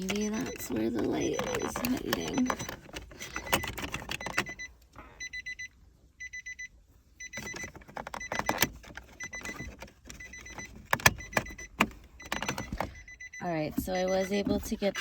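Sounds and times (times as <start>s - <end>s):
rapid electronic beeping: 0.0s - 6.6s, 11.2s - 15.0s.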